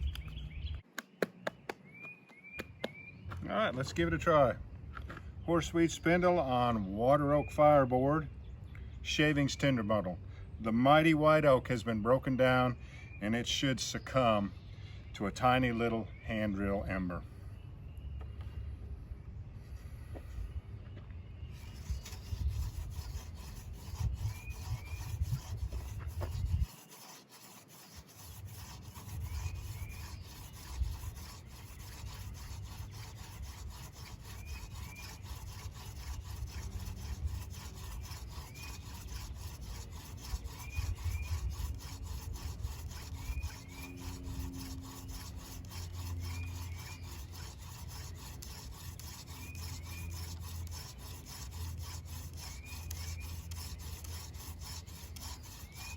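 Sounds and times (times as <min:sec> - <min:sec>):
wooden spindle rubbing on board: 0:21.6 - 0:55.9.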